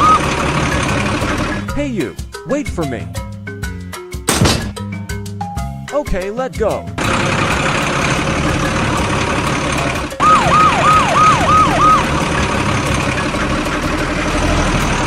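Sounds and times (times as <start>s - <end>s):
falling tone siren alarm: 0.0s - 0.3s, 10.2s - 12.5s
steady machine noise: 0.0s - 1.6s, 7.0s - 14.4s.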